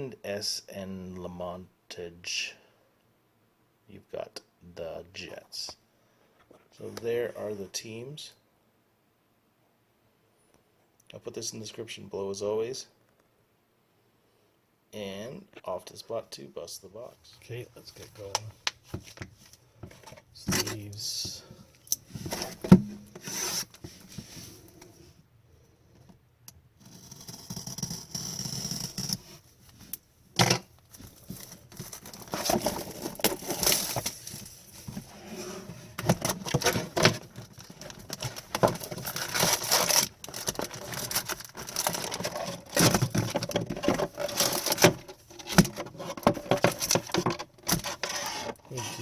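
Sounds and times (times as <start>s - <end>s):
taps and scrapes: 26.8s - 49.0s
wrappers rustling and tearing: 36.2s - 45.6s.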